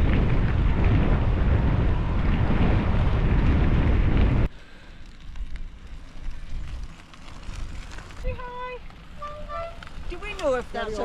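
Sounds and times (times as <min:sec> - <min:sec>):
low rumble: 0:00.0 - 0:04.5
wind buffeting microphone: 0:00.0 - 0:11.0.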